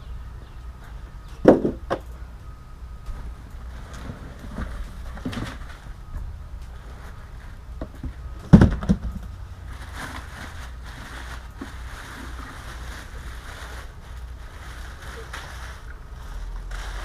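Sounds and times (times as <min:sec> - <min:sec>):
steady low hum: 0:00.0 - 0:17.0
box thumping: 0:07.8 - 0:09.2
packing rustling: 0:08.7 - 0:17.0.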